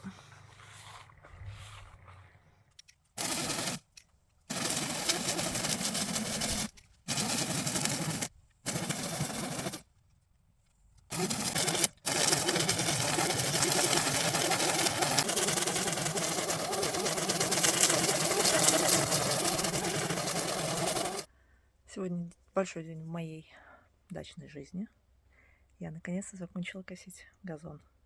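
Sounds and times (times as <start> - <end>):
lawn mower running: 3.2 - 3.8, 4.5 - 9.8, 11.1 - 21.3.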